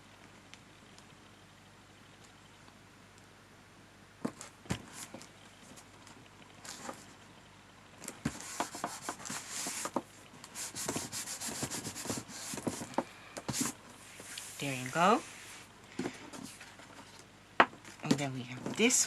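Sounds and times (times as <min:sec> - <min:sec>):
scratchy rubbing and small knocks: 0:08.1 - 0:19.0.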